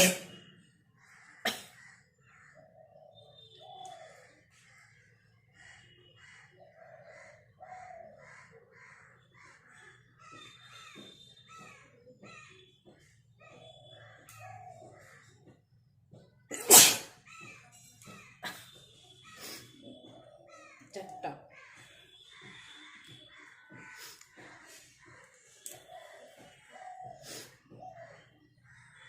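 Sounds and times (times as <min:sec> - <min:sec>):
woman sneezing: 0:00.0 - 0:00.3
birds calling: 0:00.0 - 0:29.0.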